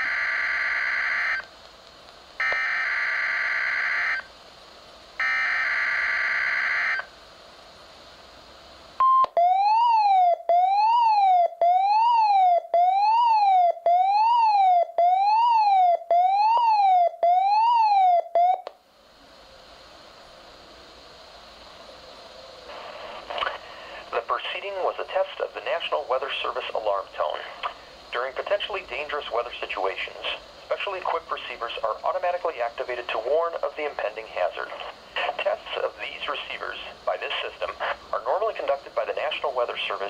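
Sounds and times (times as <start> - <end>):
siren-like alert tone: 2.4 - 4.2, 9.0 - 18.7.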